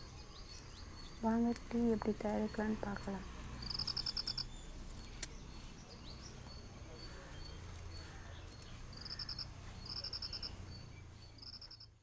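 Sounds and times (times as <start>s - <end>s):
crickets chirping: 0.0s - 5.3s, 6.9s - 10.8s.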